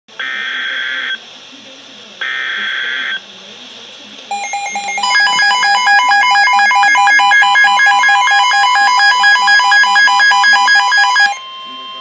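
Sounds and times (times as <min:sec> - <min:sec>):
electronic warbling alert tone: 0:04.3 - 0:12.0.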